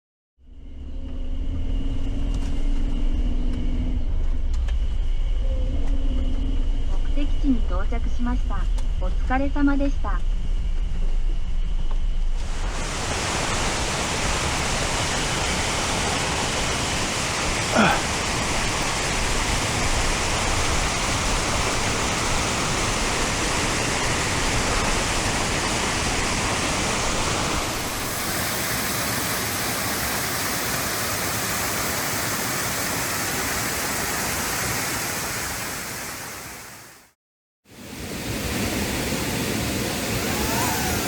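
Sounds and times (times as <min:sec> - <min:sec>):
waterfall rushing: 0:12.4 - 0:37.1, 0:37.8 - 0:41.0.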